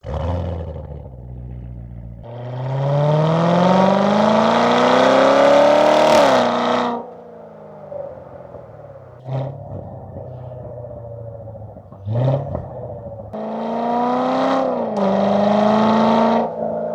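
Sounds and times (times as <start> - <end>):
sports car exhaust accelerating: 0.0 - 16.9
exhaust crackles: 7.8 - 13.4.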